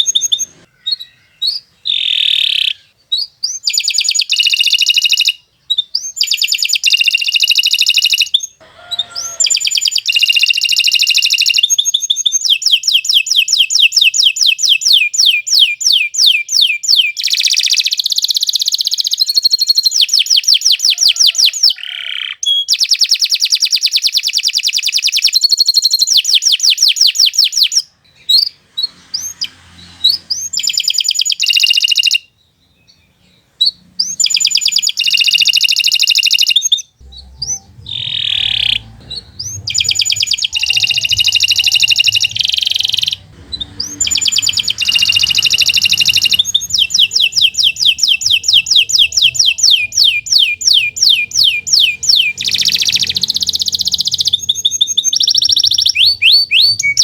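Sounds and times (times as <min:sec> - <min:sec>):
canary singing trills: 0:00.0 - 0:57.0.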